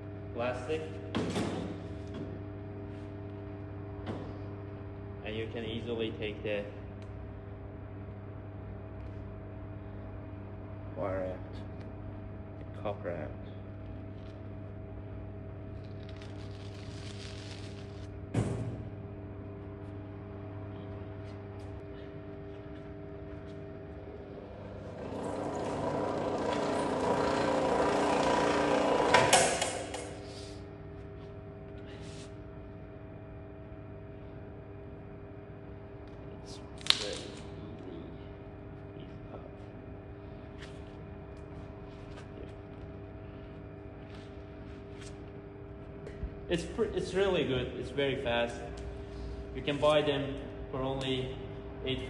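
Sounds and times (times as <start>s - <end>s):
wire stripping machine motor hum: 13.8s - 30.4s.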